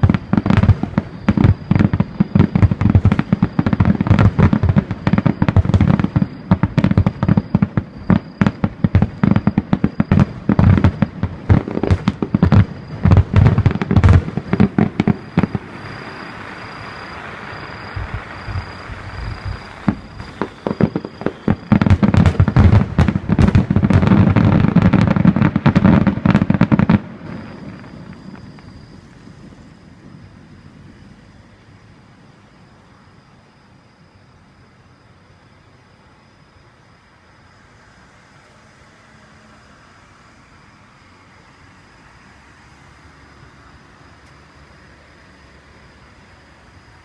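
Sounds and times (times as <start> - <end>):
fireworks bursts and bangs: 0.0 - 28.8
fireworks crackling hiss: 0.0 - 33.1.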